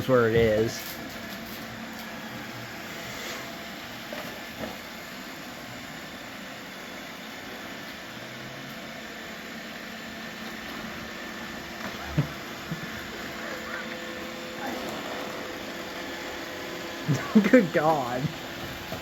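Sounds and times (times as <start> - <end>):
robot vacuum cleaners whirring: 0.0 - 19.0.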